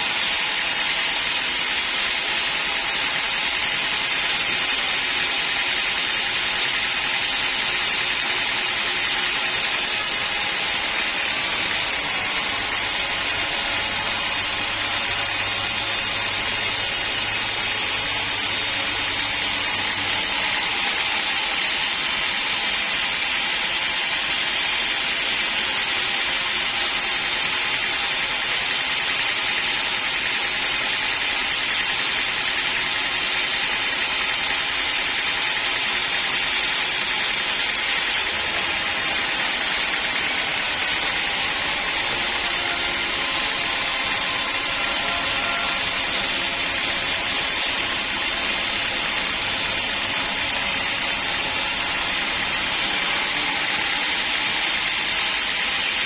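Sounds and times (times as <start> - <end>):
band sawmill hissing: 9.7 - 20.4, 38.2 - 53.0.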